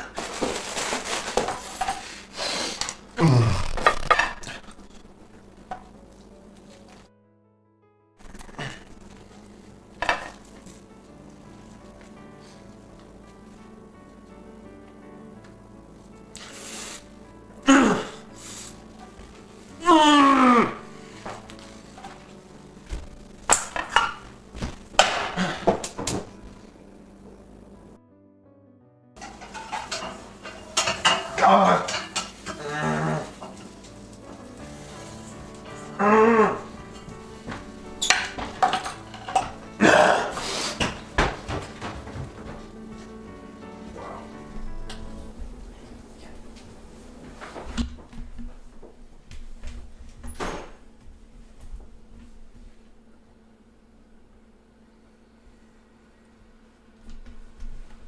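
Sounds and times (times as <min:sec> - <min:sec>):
dishes and pans clattering: 0:10.0 - 0:10.4, 0:23.7 - 0:24.3, 0:29.2 - 0:33.7, 0:38.0 - 0:39.6.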